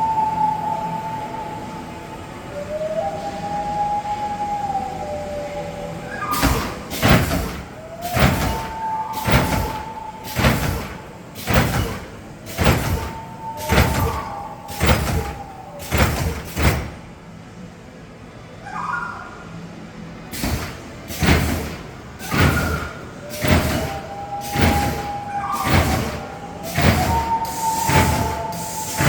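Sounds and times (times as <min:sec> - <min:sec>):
wavering siren-like wail: 0:00.0 - 0:17.2, 0:22.4 - 0:29.0
loud noise blasts: 0:06.2 - 0:17.2, 0:20.3 - 0:29.0.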